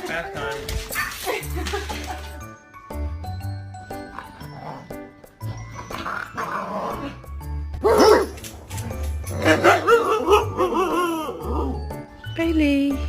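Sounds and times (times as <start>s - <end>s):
dog barking and yipping: 7.8s - 8.7s, 9.4s - 11.7s.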